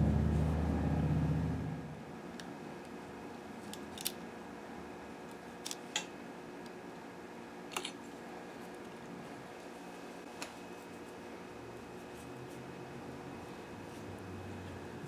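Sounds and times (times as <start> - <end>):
low hum: 0.0 - 2.3.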